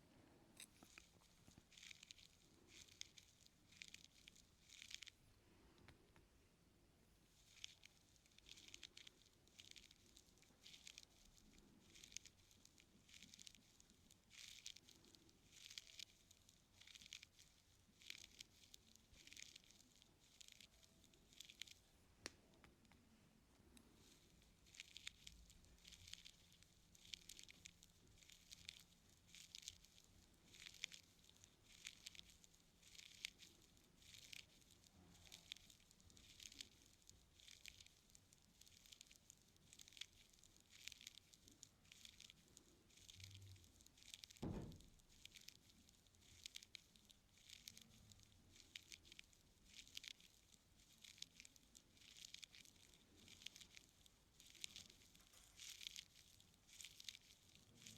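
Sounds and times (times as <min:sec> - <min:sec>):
scraping inside ear canal: 0:00.6 - 0:05.2, 0:07.4 - 0:21.8, 0:23.8 - 0:39.3
low thump: 0:44.4 - 0:44.9.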